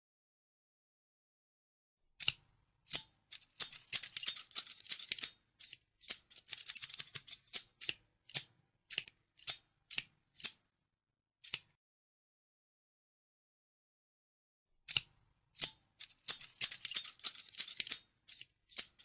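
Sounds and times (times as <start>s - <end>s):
scissors snipping: 2.2s - 10.6s, 11.4s - 11.8s, 14.9s - 19.0s.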